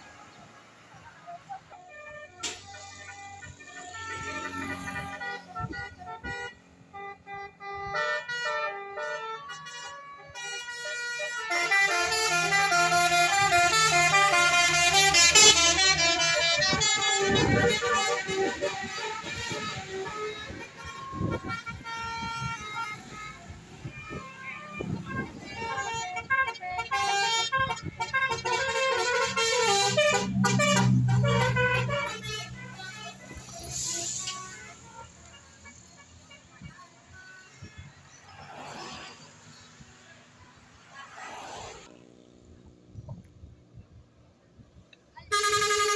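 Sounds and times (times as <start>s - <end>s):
multi-tone air horn playing tune: 1.9s - 35.6s, 45.3s - 45.9s.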